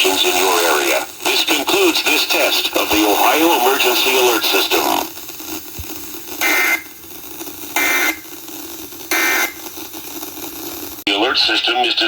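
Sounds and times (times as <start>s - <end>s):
warbling digital data buzzes: 0.0s - 11.1s
faint radio hiss: 0.0s - 12.0s.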